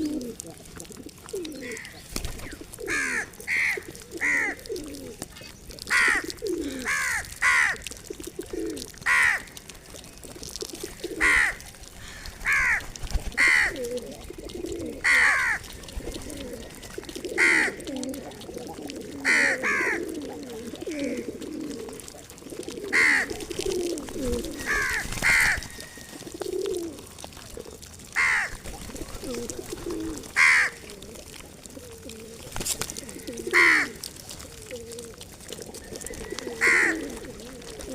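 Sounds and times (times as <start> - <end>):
pigeons cooing: 0.0 - 37.9
crow cawing: 2.8 - 4.6, 5.9 - 7.8, 9.0 - 9.6, 11.1 - 12.8, 13.4 - 13.8, 15.0 - 15.6, 17.3 - 17.8, 19.2 - 20.0, 22.9 - 23.3, 24.6 - 26.1, 28.2 - 28.6, 30.4 - 30.8, 33.1 - 34.0, 36.3 - 37.1.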